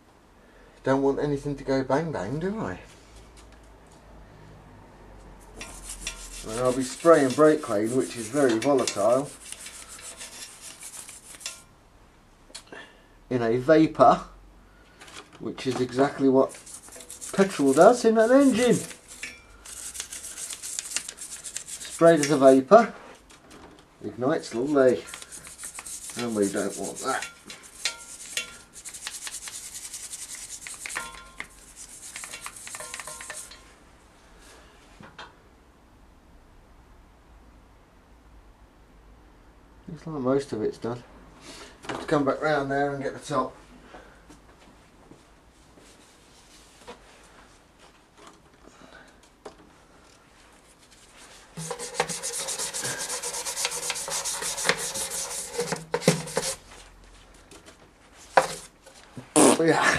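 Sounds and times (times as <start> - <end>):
scrubbing on metal casing: 5.6 - 11.6, 15.9 - 22.6, 24.4 - 33.6, 50.9 - 56.7.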